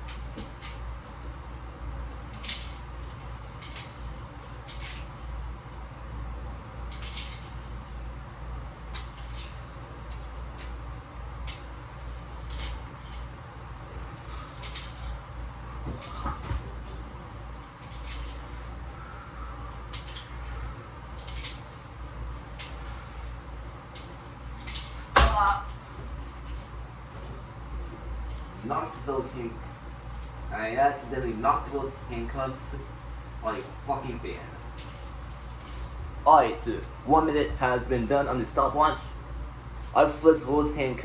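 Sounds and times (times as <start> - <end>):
handcuffs clicking and clinking: 0.0 - 5.5, 6.8 - 8.0, 8.8 - 10.8, 11.4 - 13.4, 14.5 - 15.3, 17.6 - 26.8, 27.8 - 29.4, 34.7 - 36.0
steady low hum: 0.0 - 41.0.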